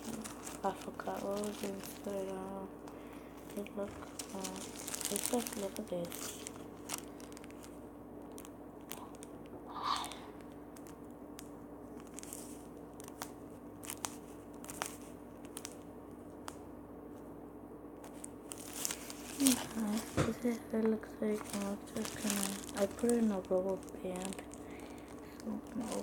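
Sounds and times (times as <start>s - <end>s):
faint steady hum: 0.0s - 26.0s
stress ball crackling: 0.0s - 26.0s.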